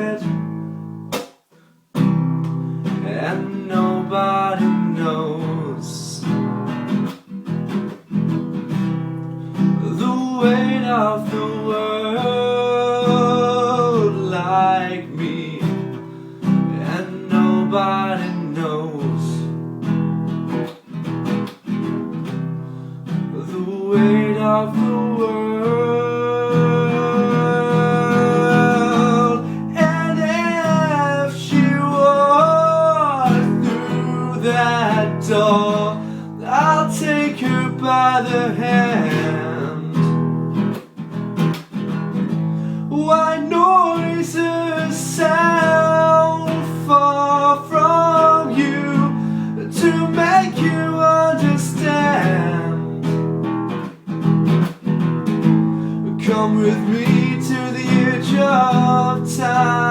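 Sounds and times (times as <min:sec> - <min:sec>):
person singing: 0:00.0 - 0:00.4, 0:02.9 - 0:06.4, 0:09.8 - 0:19.6, 0:23.3 - 0:40.2, 0:42.7 - 0:53.2, 0:56.0 - 0:59.9
acoustic guitar: 0:00.0 - 0:59.9.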